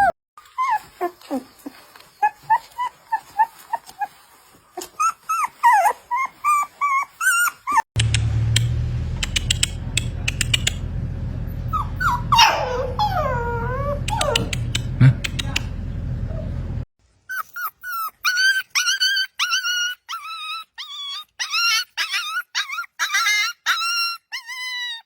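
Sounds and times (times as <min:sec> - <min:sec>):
puppies whimpering and yipping: 0:00.0 - 0:07.9, 0:09.2 - 0:25.0
puppy whining cry: 0:00.0 - 0:07.9, 0:11.5 - 0:15.6, 0:17.3 - 0:25.0
scattered clicks: 0:08.0 - 0:11.0, 0:14.0 - 0:16.1
steady low hum: 0:08.0 - 0:16.9.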